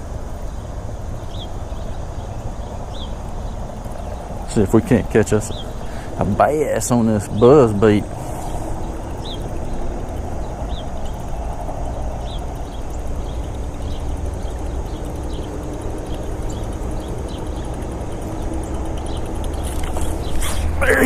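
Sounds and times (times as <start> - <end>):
wind rumble on microphone: 0.0 - 21.0.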